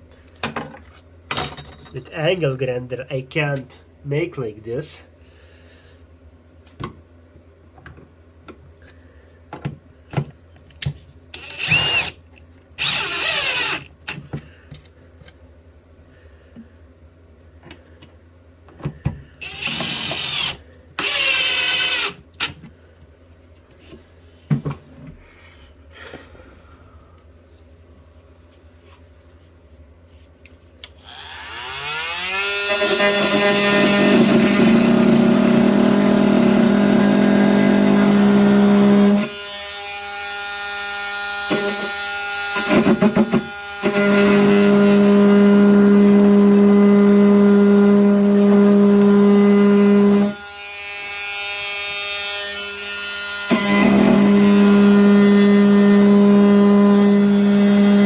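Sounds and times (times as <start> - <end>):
oscillating multi-tool buzzing: 31.0 - 33.8.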